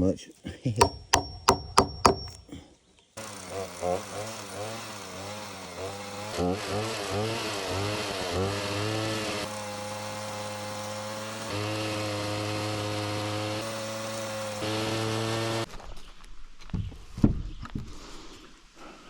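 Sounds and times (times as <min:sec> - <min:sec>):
chainsaw engine revving: 0:03.2 - 0:15.7.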